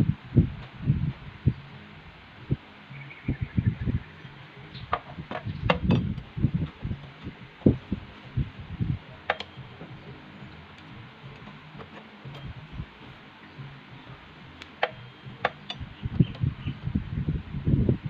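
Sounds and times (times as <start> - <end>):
low knocks and thumps: 4.8 - 10.1.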